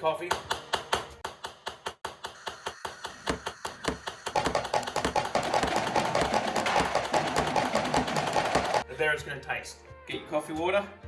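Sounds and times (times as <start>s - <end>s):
rapid tapping on coffee maker: 1.3s - 8.8s.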